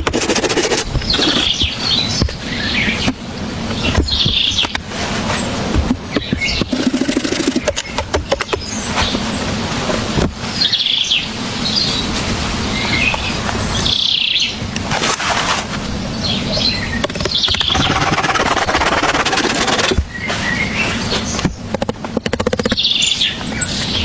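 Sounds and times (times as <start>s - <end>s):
birds chirping: 0.0s - 14.9s, 15.7s - 24.0s
loud steady rushing noise: 0.0s - 24.0s
sharp clicks: 21.7s - 22.9s.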